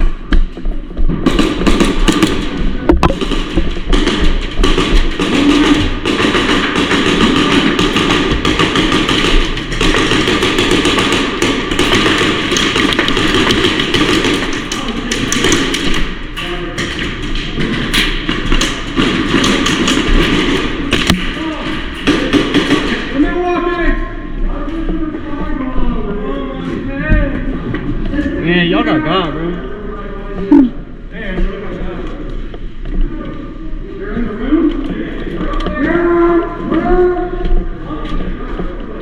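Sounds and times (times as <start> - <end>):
airsoft gunfire and hits: 1.1 - 16.2, 16.8 - 23.2.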